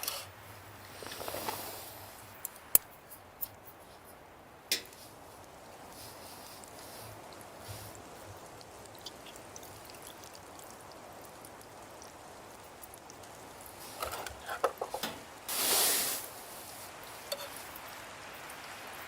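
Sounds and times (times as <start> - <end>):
low steady hiss: 0.0 - 19.0
liquid splashing: 5.2 - 19.0
light clicks and knocks: 14.0 - 15.3.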